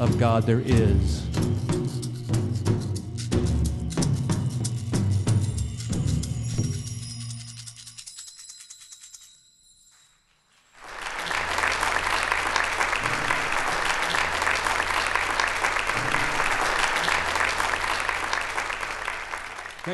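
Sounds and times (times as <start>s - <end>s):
band music: 0.0s - 5.5s
audience applauding: 10.7s - 19.9s.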